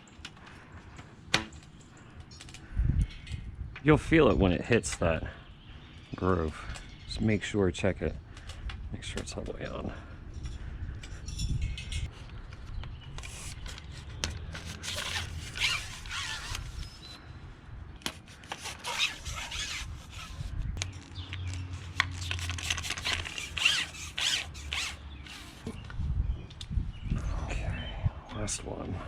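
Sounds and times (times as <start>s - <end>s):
scraping and rubbing: 13.1s - 17.2s, 18.1s - 25.8s.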